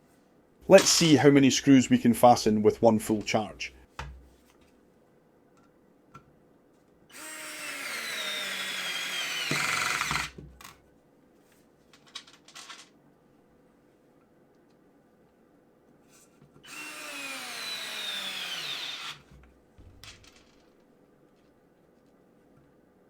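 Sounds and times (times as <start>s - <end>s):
electric screwdriver whining: 7.1s - 10.4s, 16.7s - 19.2s.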